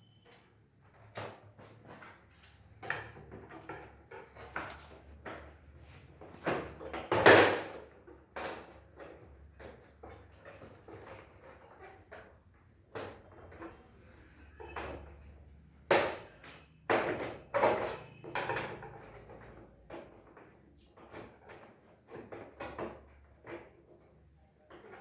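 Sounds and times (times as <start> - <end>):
hard objects knocking and clattering: 1.2 - 25.0.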